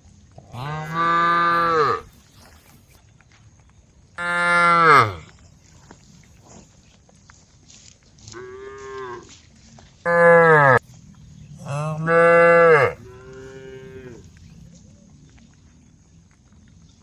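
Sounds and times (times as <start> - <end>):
cows mooing: 0.5 - 2.2, 4.2 - 5.3, 10.1 - 10.8, 11.6 - 14.4.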